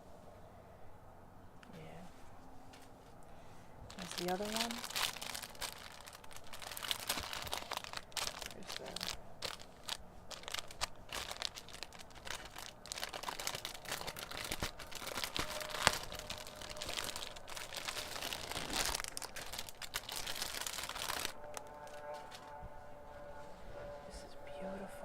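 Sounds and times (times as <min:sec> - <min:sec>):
packaging crinkling and rustling: 0:03.9 - 0:22.5.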